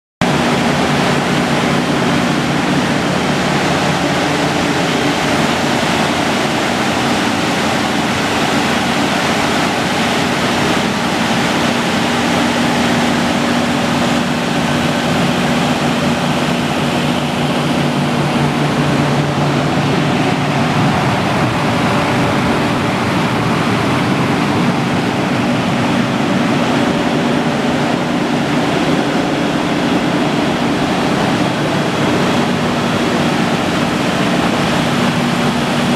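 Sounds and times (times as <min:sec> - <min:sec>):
diesel generator running: 0:00.2 - 0:35.9.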